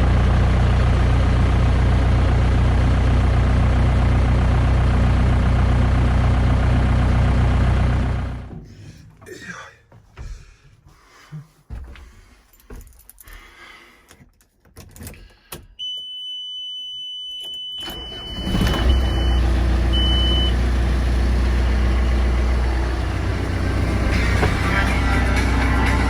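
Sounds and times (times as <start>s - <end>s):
diesel engine idling: 0.0s - 8.5s, 17.8s - 26.0s
high warning beep: 15.8s - 20.6s
short beeps: 15.8s - 20.6s.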